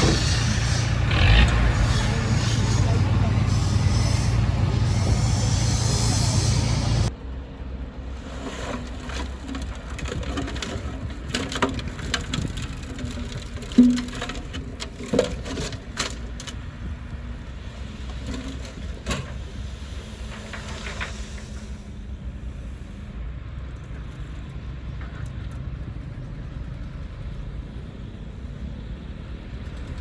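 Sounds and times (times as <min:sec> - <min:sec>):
diesel engine rumbling: 0:00.0 - 0:07.1.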